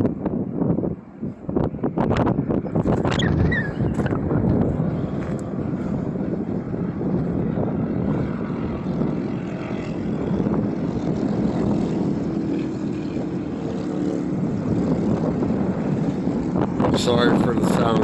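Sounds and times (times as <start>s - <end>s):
faint engine drone: 0.0s - 18.0s
highway truck traffic: 0.0s - 18.0s
wind buffeting microphone: 0.0s - 18.0s.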